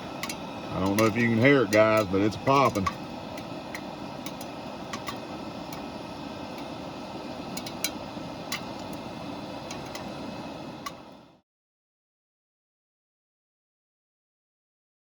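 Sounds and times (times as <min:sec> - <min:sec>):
oil hissing: 0:00.0 - 0:11.4
popcorn kernels popping: 0:00.2 - 0:05.8.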